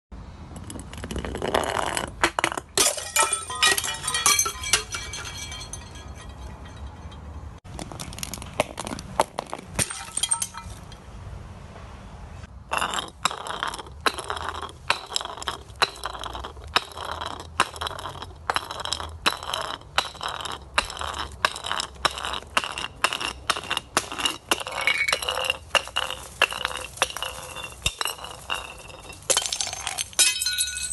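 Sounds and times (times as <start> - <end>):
broken glass clinking: 2.8 - 7.5, 9.8 - 11.0, 18.1 - 30.9.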